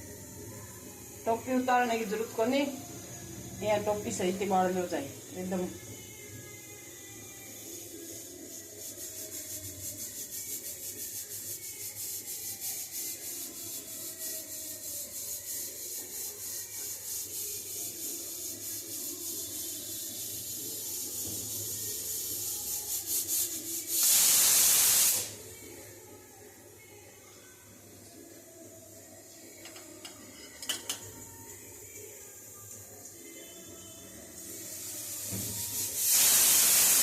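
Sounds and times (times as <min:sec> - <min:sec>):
loud hiss: 0:15.6 - 0:25.5, 0:34.6 - 0:37.0.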